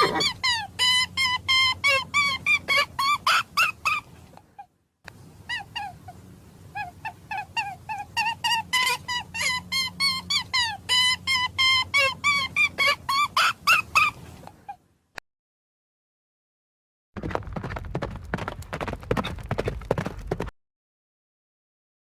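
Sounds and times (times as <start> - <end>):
short bird calls: 0.0 - 0.4.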